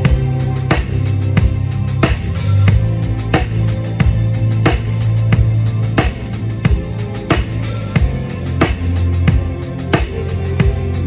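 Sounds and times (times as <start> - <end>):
drum kit hits: 0.0 - 10.8
sustained bass line: 0.0 - 11.0.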